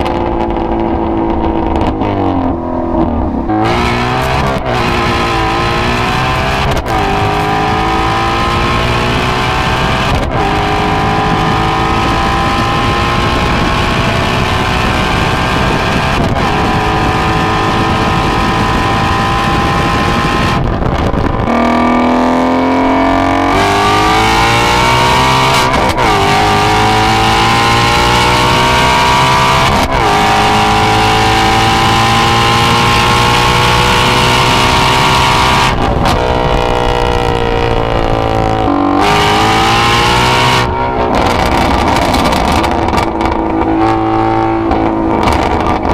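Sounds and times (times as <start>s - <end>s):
car engine accelerating through gears: 0.0s - 45.9s.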